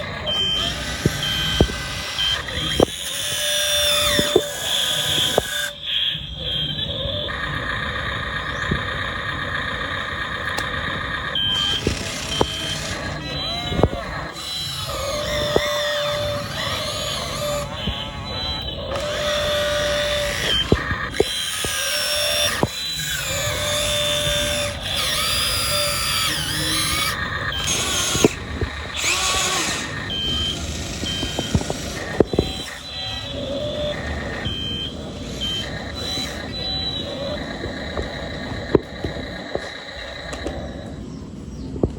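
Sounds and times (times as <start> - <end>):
model excavator motors whining: 0.0 - 41.9
short beeps: 0.2 - 3.0, 11.2 - 39.4.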